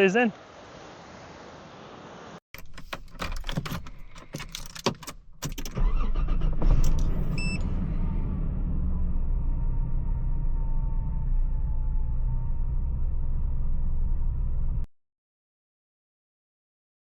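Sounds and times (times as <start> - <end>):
keys jangling: 2.6 - 5.8
sharp clicks: 2.6 - 5.8
car engine rumble: 2.6 - 14.9.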